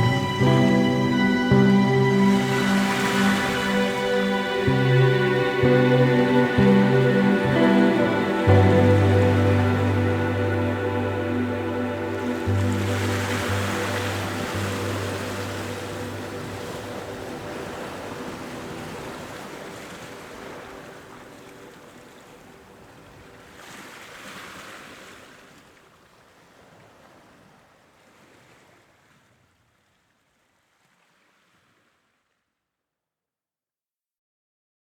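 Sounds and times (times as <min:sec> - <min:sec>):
held musical tones: 0:00.0 - 0:19.7
rushing surf-like noise: 0:00.0 - 0:22.7.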